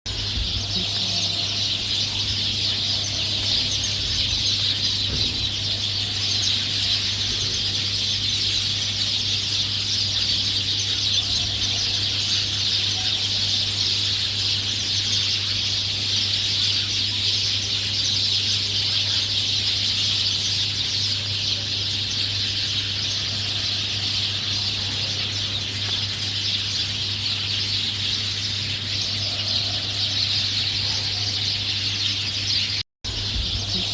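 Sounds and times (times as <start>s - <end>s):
chorus of small birds chirping: 0.1s - 33.9s
steady low hum: 32.4s - 33.9s.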